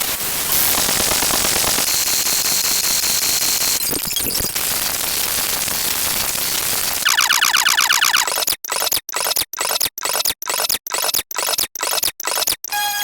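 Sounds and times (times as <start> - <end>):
crackles: 3.8 - 7.0.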